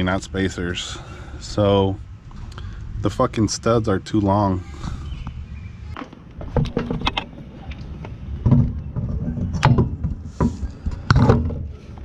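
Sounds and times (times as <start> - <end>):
wheel knocks and clunks: 6.0 - 12.0.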